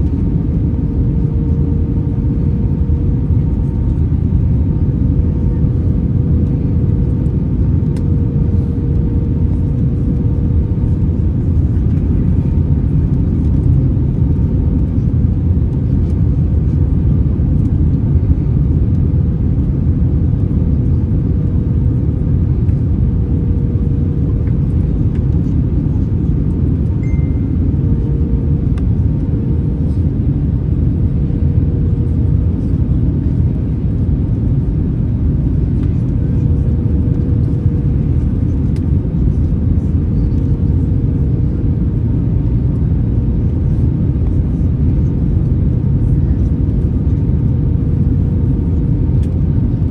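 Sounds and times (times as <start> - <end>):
airplane cabin engine rumble: 0.0 - 49.9
faint even hum: 26.0 - 31.1.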